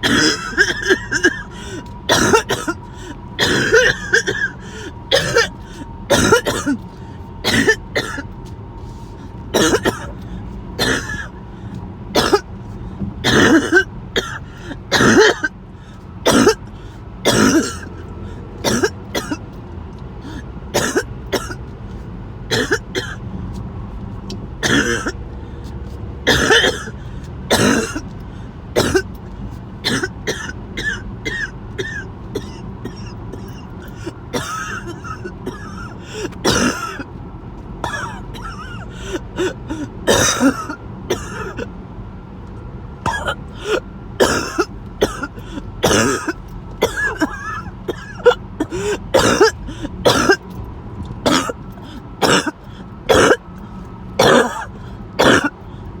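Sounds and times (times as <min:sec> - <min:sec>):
throat clearing: 0:00.0 - 0:02.8, 0:03.4 - 0:06.8, 0:07.4 - 0:08.2, 0:09.6 - 0:10.2, 0:10.8 - 0:11.3, 0:13.2 - 0:15.5, 0:16.3 - 0:16.6, 0:17.3 - 0:17.9, 0:24.6 - 0:25.2, 0:26.3 - 0:28.1, 0:29.9 - 0:37.0, 0:37.9 - 0:41.6, 0:43.1 - 0:50.4, 0:51.3 - 0:53.4, 0:54.2 - 0:55.6
person coughing harshly: 0:00.0 - 0:08.3, 0:09.5 - 0:10.2, 0:10.8 - 0:11.4, 0:12.1 - 0:12.5, 0:13.2 - 0:15.6, 0:16.2 - 0:18.0, 0:18.6 - 0:19.4, 0:20.2 - 0:21.6, 0:22.5 - 0:23.2, 0:24.6 - 0:25.2, 0:26.3 - 0:28.2, 0:28.8 - 0:29.2, 0:29.8 - 0:37.1, 0:37.8 - 0:41.7, 0:43.1 - 0:50.5, 0:51.2 - 0:53.4, 0:54.2 - 0:55.6
steady low hum: 0:00.0 - 0:56.0.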